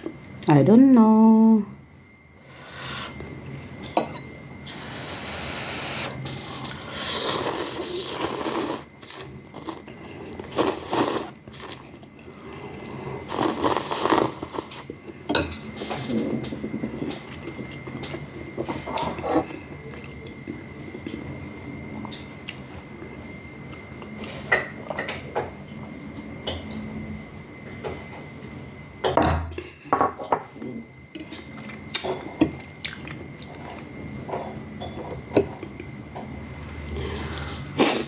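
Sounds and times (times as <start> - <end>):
slurping and chewing: 4.6 - 15.2.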